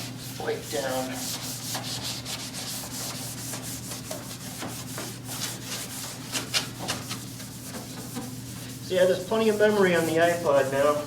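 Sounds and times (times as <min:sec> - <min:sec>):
scuff pad rasping on plastic: 0:00.7 - 0:08.8.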